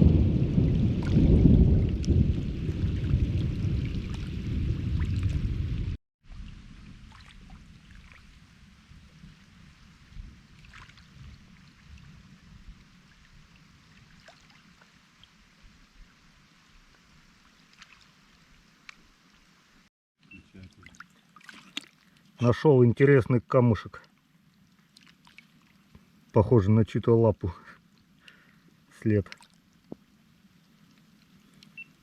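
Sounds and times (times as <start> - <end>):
raindrops pattering: 0.0 - 6.0
low rumble of rain: 0.0 - 19.9, 22.0 - 32.0.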